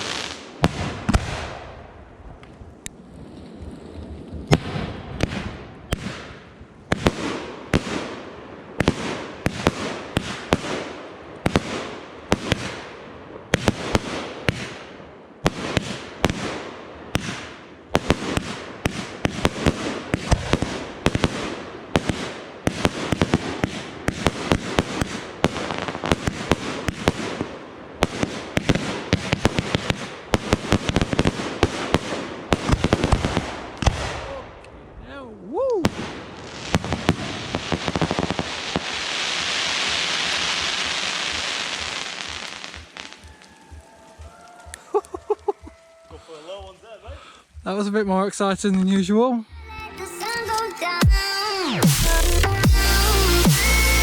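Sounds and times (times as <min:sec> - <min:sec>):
fireworks bangs and crackling: 0:00.0 - 0:35.0, 0:35.8 - 0:47.8, 0:50.0 - 0:54.0.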